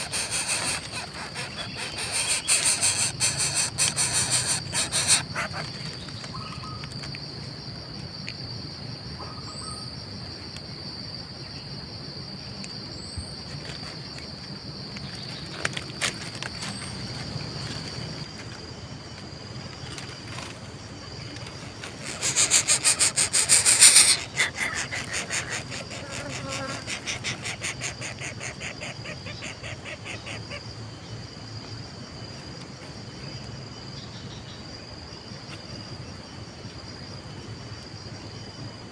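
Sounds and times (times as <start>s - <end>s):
rapid insect buzzing: 0.0s - 5.8s, 21.5s - 29.2s
high-pitched insect trill: 0.0s - 11.8s, 12.4s - 36.6s.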